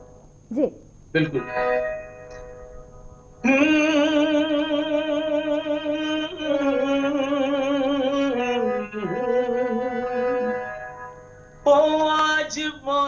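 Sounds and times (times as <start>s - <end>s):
man singing long note with vibrato: 3.4s - 13.0s.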